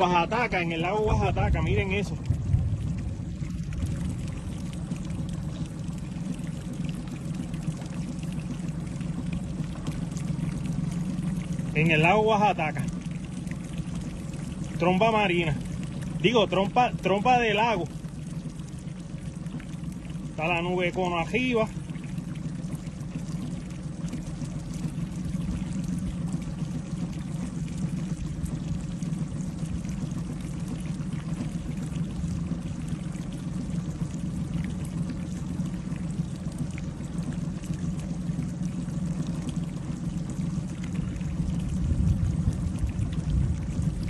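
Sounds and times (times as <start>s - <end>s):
wind buffeting microphone: 0.0s - 6.7s, 40.1s - 44.0s.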